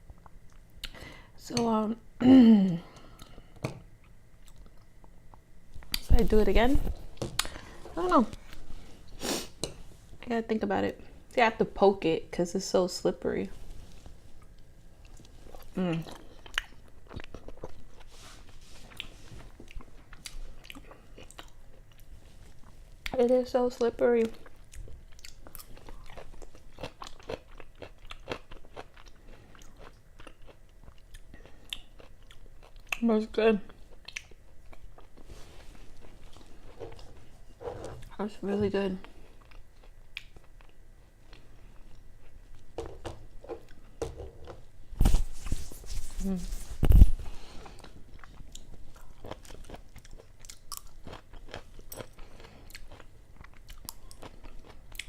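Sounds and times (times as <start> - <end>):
person chewing: 2.9 - 6.0, 14.4 - 23.2, 24.2 - 33.0, 33.7 - 38.1, 39.0 - 44.6, 46.0 - 55.0.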